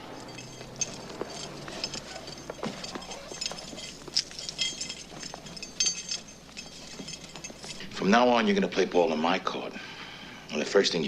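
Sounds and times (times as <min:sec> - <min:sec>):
metal and glass objects clinking: 0:00.0 - 0:08.0.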